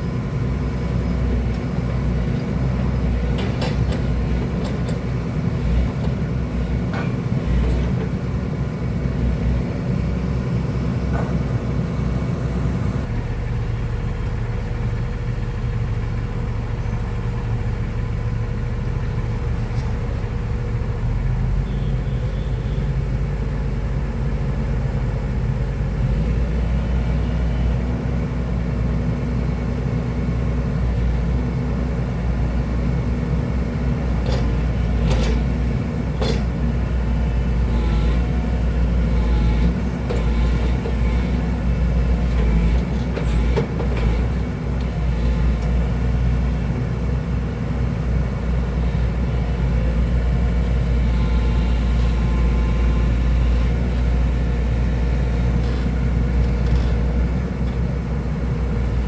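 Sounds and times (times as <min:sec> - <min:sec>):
diesel engine rumbling: 0:00.0 - 0:59.0.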